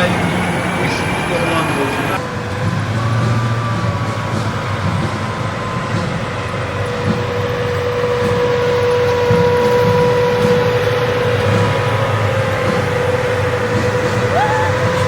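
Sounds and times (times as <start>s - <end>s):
high steady whine: 0.0s - 2.8s
vehicle engine rumble: 0.0s - 15.0s.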